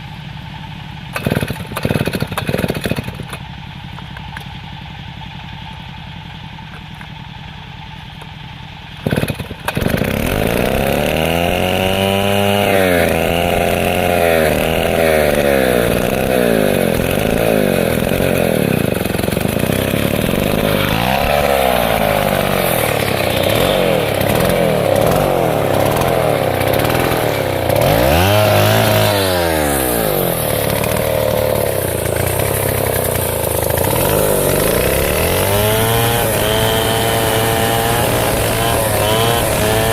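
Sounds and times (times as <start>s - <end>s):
chainsaw cutting wood: 1.1s - 4.5s, 9.0s - 39.9s.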